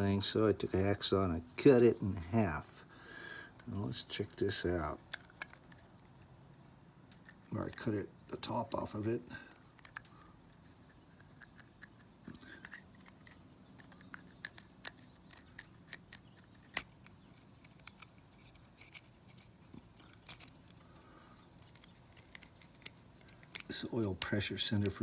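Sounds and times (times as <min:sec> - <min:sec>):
metal part handling clicks: 0:05.0 - 0:06.1, 0:09.5 - 0:21.0, 0:21.6 - 0:25.0.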